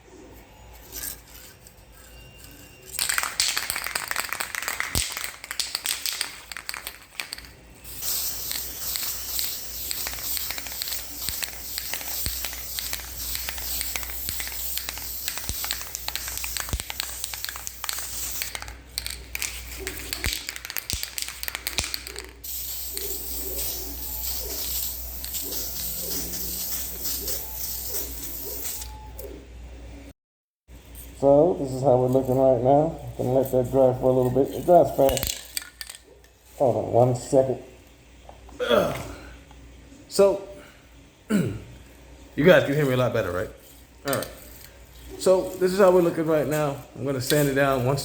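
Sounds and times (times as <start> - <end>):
aerosol can spraying: 3.0 - 28.9.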